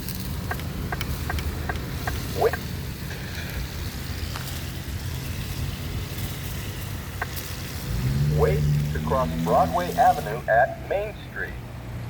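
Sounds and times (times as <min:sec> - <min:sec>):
traffic rumbling: 0:00.0 - 0:12.0
crosswalk button ticking: 0:00.4 - 0:02.6, 0:07.2 - 0:07.4
recorded voice speaking: 0:08.3 - 0:11.6.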